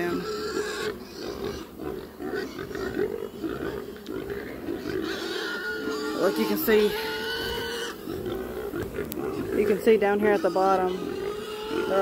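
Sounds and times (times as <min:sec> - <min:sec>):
pigs screaming and grunting: 0:00.0 - 0:12.0.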